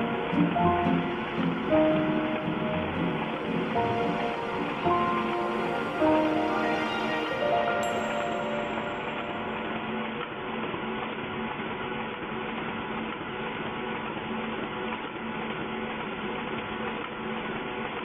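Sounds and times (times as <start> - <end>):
machine running with low hum: 0.0 - 7.5.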